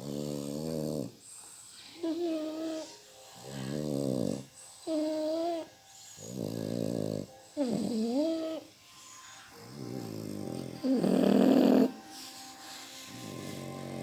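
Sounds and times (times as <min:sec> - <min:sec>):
dog snoring: 0:00.0 - 0:14.0
whistling out-breath: 0:08.8 - 0:09.6, 0:12.0 - 0:14.0.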